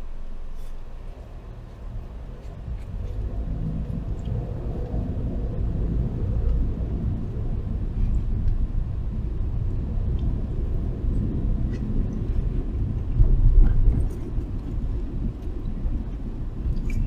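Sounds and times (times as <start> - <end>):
car road and engine rumble: 0.0 - 17.0.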